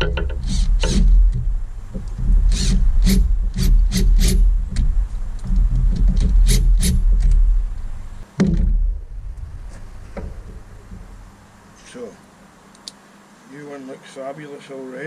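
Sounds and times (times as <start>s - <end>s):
knocks and clicks of parts: 0.0s - 7.5s
steady low rumble: 0.0s - 12.6s.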